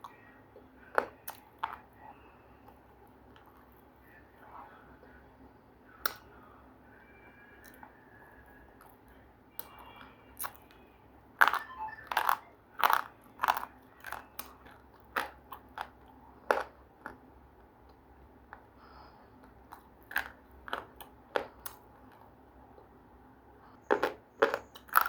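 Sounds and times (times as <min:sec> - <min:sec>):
crunchy chewing: 0:00.0 - 0:05.2, 0:11.4 - 0:17.2, 0:19.4 - 0:22.9, 0:23.6 - 0:25.0.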